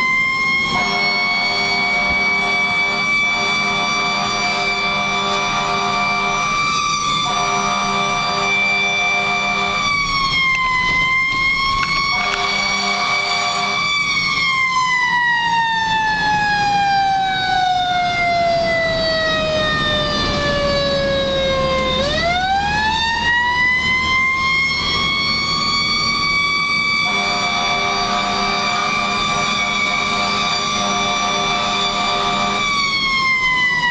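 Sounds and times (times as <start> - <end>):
fire engine siren wailing: 0.0 - 33.9
truck engine rumble: 0.0 - 33.9
low steady horn: 0.6 - 10.2, 11.7 - 14.1, 27.0 - 32.9.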